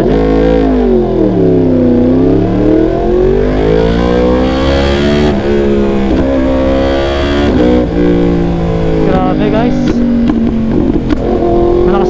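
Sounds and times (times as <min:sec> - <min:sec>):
motorcycle engine revving: 0:00.0 - 0:12.0
exhaust backfire pops: 0:09.8 - 0:11.4.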